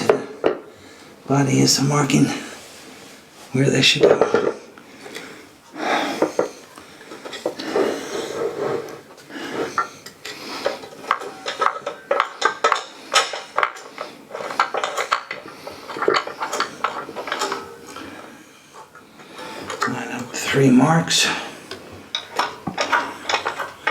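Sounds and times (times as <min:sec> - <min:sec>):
metal parts clinking and knocking: 0:06.2 - 0:07.8, 0:09.7 - 0:18.2, 0:18.8 - 0:20.3, 0:22.1 - 0:23.9.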